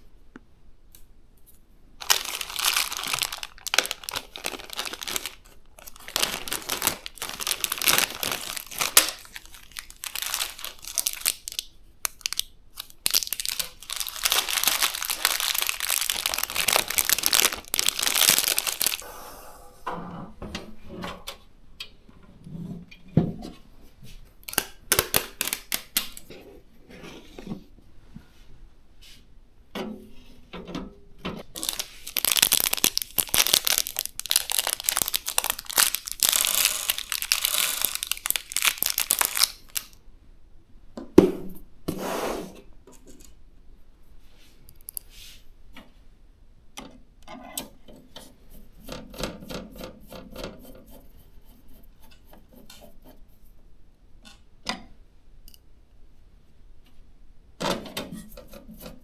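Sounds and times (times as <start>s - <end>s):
plastic rustling and tearing: 2.0s - 19.0s, 24.4s - 26.3s, 31.4s - 40.0s.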